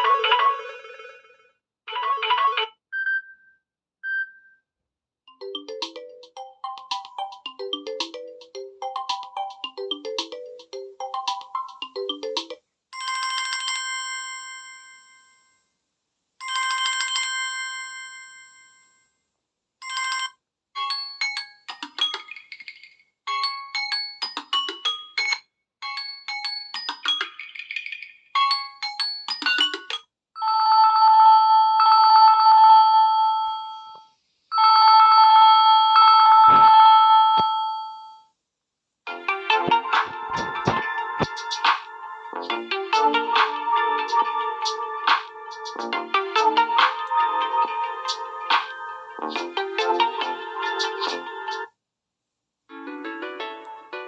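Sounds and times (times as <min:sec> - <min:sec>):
ringtone melody: 0:05.3 - 0:15.1, 0:19.8 - 0:38.2, 0:39.1 - 0:51.7, 0:52.7 - 0:54.0
fast repeating chimes: 0:05.4 - 0:12.6, 0:20.8 - 0:30.0, 0:39.5 - 0:51.6.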